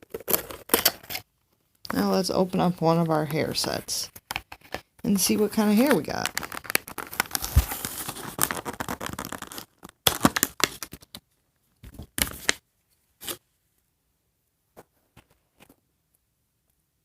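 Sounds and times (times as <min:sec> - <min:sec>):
plastic packaging crinkling: 0:00.0 - 0:01.2, 0:01.9 - 0:11.2.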